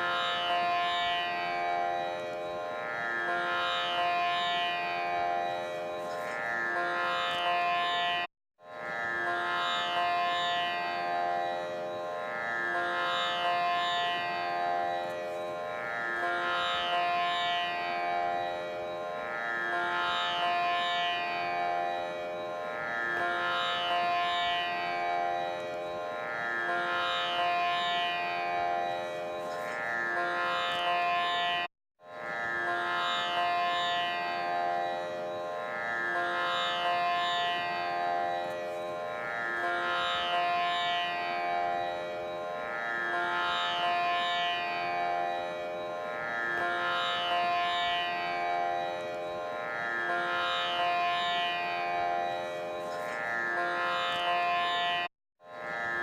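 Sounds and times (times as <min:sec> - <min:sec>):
steady drone: 0:00.0 - 0:56.0.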